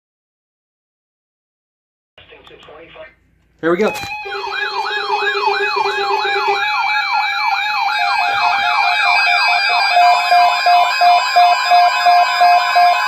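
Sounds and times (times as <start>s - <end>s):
electronic siren yelping: 3.8s - 13.0s
steady tones: 3.8s - 13.0s
pulsing beep: 7.7s - 13.0s.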